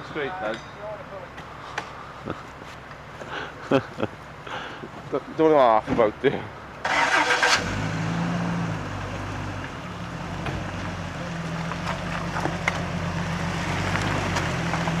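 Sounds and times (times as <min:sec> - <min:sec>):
vehicle engine running: 0:06.9 - 0:15.0.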